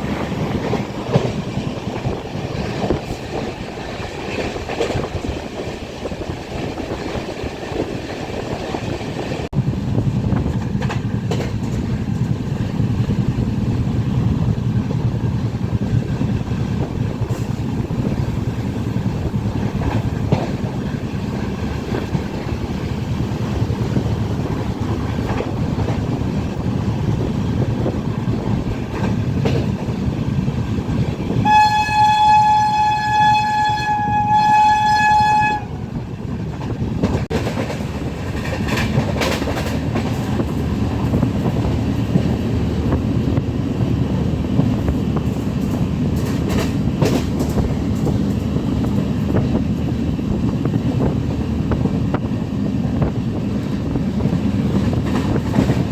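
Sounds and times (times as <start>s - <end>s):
train rumbling on rails: 0.0s - 55.9s
wheels clicking over rail joints: 10.3s - 13.8s, 14.4s - 32.0s, 36.4s - 43.4s, 44.1s - 52.2s
train horn: 31.4s - 36.0s.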